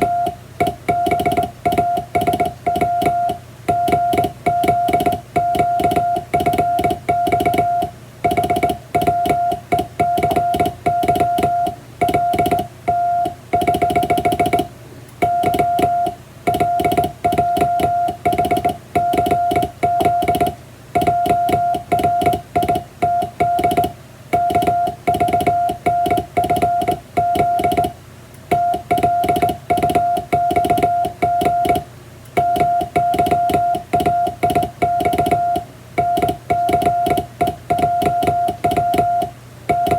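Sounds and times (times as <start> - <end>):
telegraph key clicking: 0.0 - 27.9
morse code beeps: 0.0 - 39.9.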